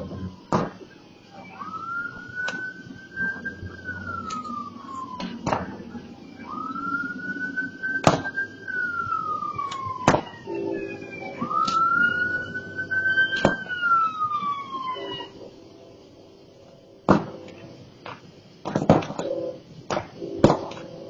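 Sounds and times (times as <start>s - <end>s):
emergency vehicle siren wailing: 0.0s - 17.8s, 19.0s - 19.6s, 20.2s - 21.0s
low steady hum: 0.0s - 21.0s
sharp pops and cracks: 0.5s - 1.0s, 1.8s - 3.5s, 4.1s - 5.8s, 7.9s - 10.4s, 11.3s - 12.3s, 13.3s - 14.0s, 17.1s - 20.9s.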